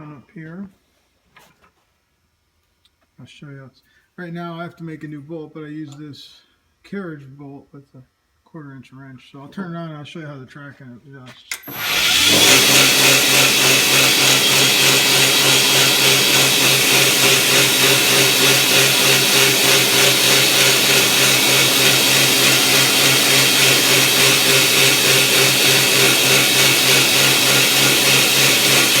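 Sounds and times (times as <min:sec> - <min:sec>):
belt grinder whining: 0:11.6 - 0:29.0.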